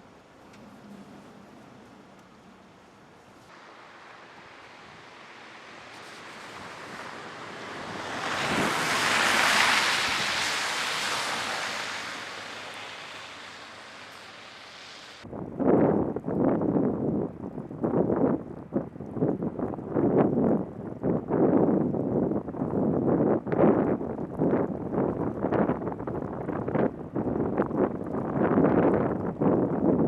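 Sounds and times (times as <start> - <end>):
tyres hissing through slush: 3.4 - 15.2.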